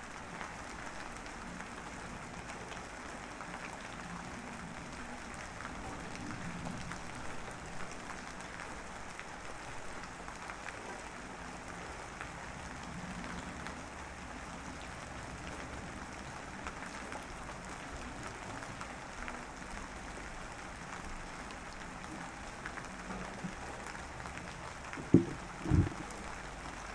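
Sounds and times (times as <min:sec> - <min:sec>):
light rain pattering: 0:00.0 - 0:26.9
dull thumps: 0:25.0 - 0:26.1.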